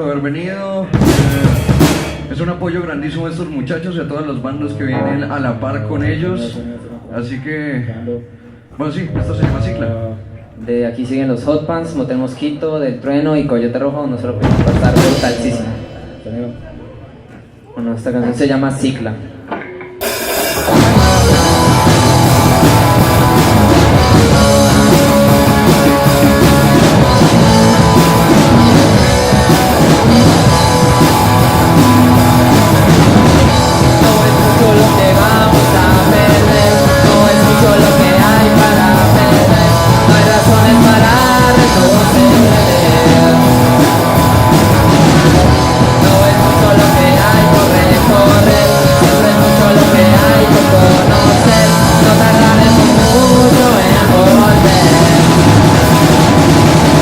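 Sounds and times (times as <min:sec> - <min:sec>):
drum kit: 0:00.8 - 0:03.4, 0:08.9 - 0:10.0, 0:14.3 - 0:17.5, 0:19.5 - 0:57.0
bass guitar: 0:00.8 - 0:03.5, 0:14.2 - 0:16.9, 0:19.5 - 0:57.0
guitars: 0:19.4 - 0:57.0.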